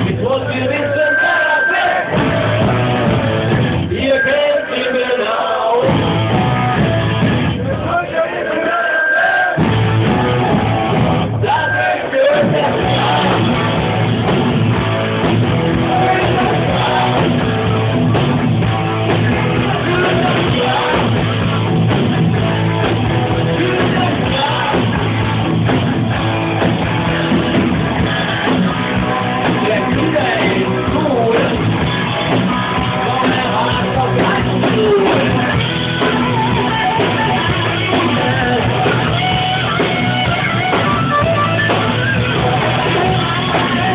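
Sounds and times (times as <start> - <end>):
rock music with guitar: 0.0 - 8.0, 9.2 - 43.9
person singing: 15.7 - 17.7, 19.3 - 21.6, 23.3 - 25.4, 32.4 - 39.8, 41.7 - 43.9.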